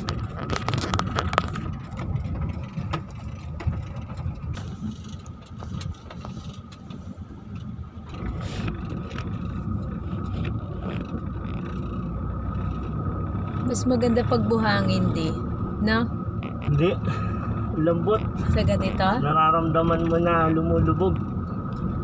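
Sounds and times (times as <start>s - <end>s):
knocks and rattles: 0.0s - 13.7s
engine and tyre rumble: 0.0s - 22.0s.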